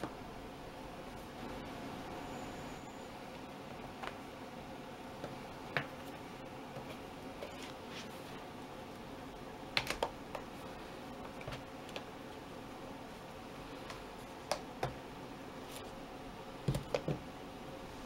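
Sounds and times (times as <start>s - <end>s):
tablet and keyboard clicks: 9.7s - 10.5s, 13.8s - 15.0s.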